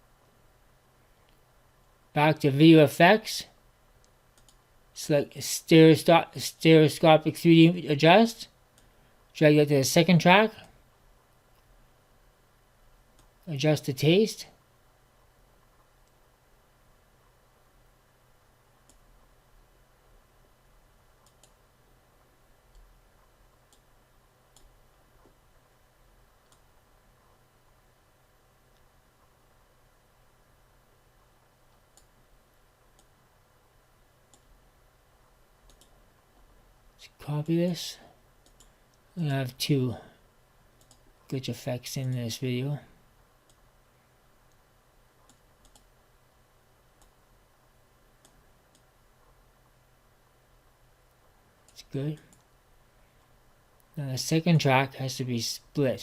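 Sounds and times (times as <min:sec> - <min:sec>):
faint low hum: 0:00.0 - 0:56.0
computer mouse clicks: 0:04.0 - 0:04.6, 0:18.8 - 0:19.1, 0:21.2 - 0:21.6, 0:24.5 - 0:25.4, 0:26.4 - 0:26.7, 0:31.7 - 0:32.2, 0:32.9 - 0:33.2, 0:34.3 - 0:34.6, 0:35.6 - 0:36.0, 0:38.4 - 0:39.0, 0:40.8 - 0:41.1, 0:43.4 - 0:43.7, 0:45.2 - 0:45.9, 0:48.2 - 0:48.9, 0:51.6 - 0:52.5.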